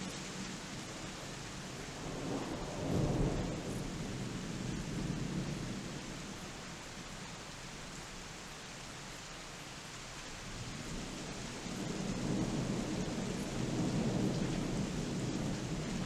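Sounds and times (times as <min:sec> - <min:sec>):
steady rain: 0:00.0 - 0:16.0
distant thunder rumbling: 0:01.8 - 0:06.4, 0:11.8 - 0:16.0.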